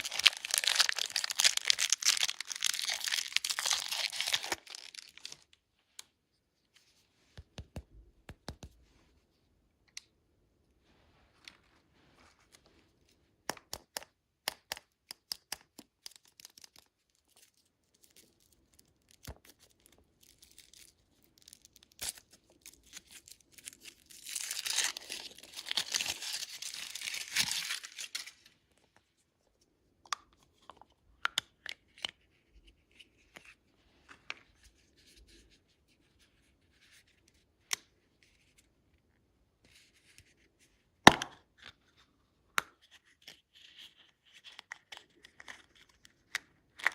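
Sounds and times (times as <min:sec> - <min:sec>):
candy wrapper crinkling: 0:00.0 - 0:05.6, 0:16.0 - 0:28.5
sharp clicks and taps: 0:07.4 - 0:08.8.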